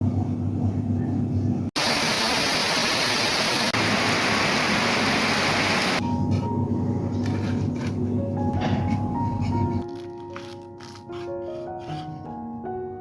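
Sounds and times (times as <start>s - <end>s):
heavy rain falling: 1.8s - 6.0s.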